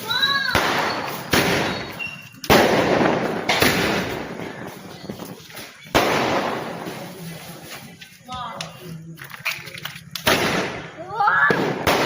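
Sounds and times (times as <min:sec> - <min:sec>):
firecracker bangs: 0:00.0 - 0:04.5, 0:05.8 - 0:07.1, 0:10.2 - 0:12.0.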